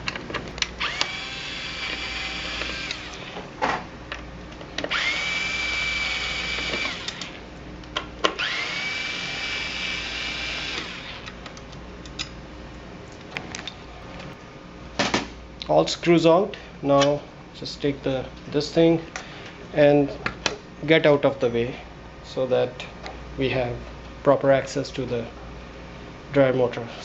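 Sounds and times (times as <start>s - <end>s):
electric screwdriver whining: 0.6s - 3.4s, 4.9s - 7.4s, 8.3s - 11.3s.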